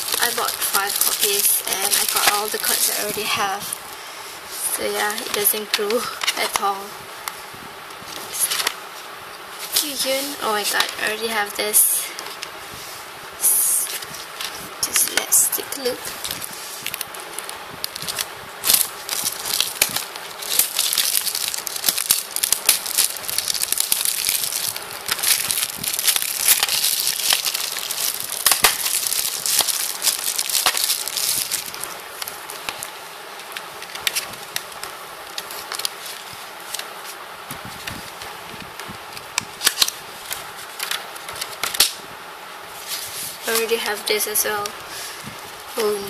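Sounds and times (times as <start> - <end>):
plastic packaging crinkling: 0.0 - 4.0, 4.6 - 6.9, 13.5 - 42.0.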